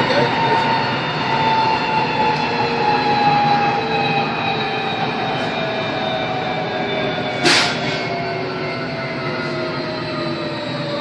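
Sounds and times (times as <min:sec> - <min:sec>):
train rumble: 0:00.0 - 0:11.0.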